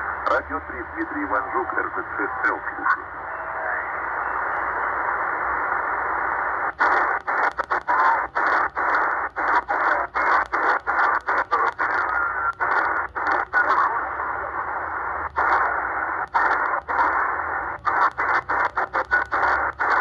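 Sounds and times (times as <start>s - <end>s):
shortwave radio static: 0.0s - 20.0s
receiver tuning clicks: 6.5s - 20.0s.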